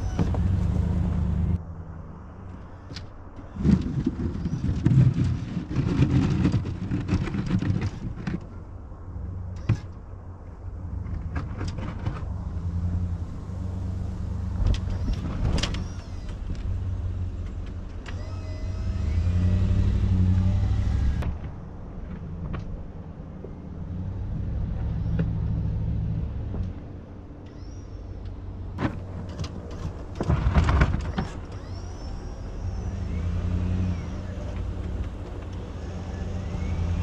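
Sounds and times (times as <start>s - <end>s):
snowplow engine running: 0.0s - 37.0s
thin whine: 12.3s - 21.4s, 24.6s - 37.0s.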